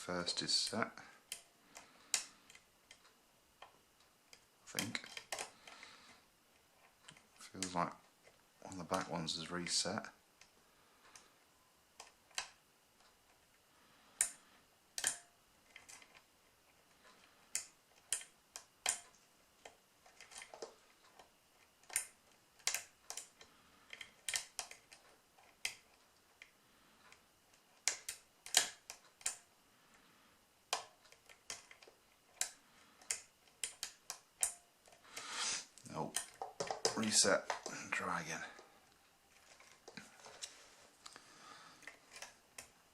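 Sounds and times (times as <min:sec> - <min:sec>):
lock pick metallic clicks: 0:15.0 - 0:16.2, 0:27.8 - 0:29.4.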